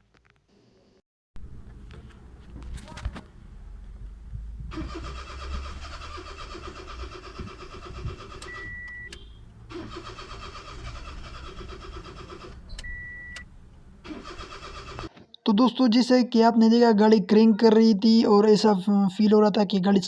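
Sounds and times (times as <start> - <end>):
car engine cranking: 1.4 - 15.1.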